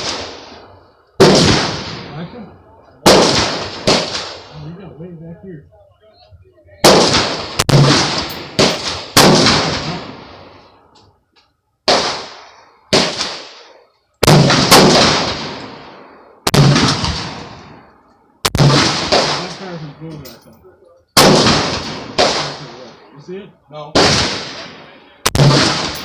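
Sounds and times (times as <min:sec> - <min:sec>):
rifle shots echoing: 0:00.0 - 0:02.3, 0:03.0 - 0:04.5, 0:06.8 - 0:10.7, 0:11.8 - 0:20.3, 0:21.2 - 0:23.1, 0:23.9 - 0:26.0.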